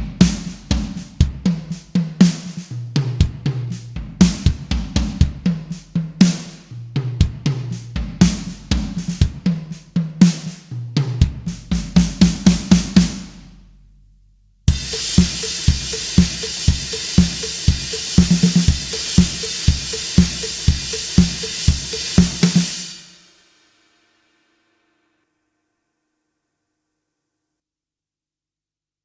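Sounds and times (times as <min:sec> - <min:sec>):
acoustic drum kit groove: 0:00.0 - 0:13.6, 0:14.7 - 0:23.2.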